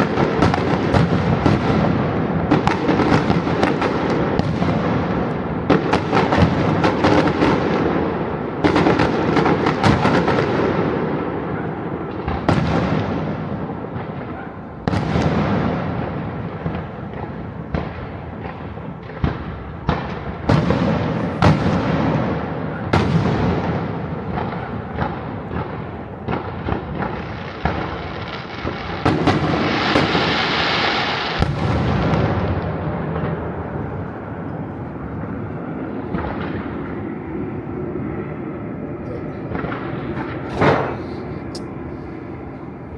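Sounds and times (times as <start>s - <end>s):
fireworks bangs and booms: 0.0s - 42.9s
fireworks crackling: 0.0s - 42.9s
fireworks hissing: 28.6s - 31.6s, 39.2s - 42.7s.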